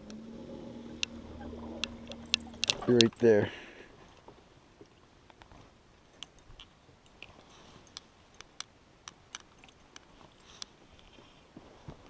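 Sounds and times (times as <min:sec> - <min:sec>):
fishing tackle clicks and taps: 0:01.8 - 0:03.2.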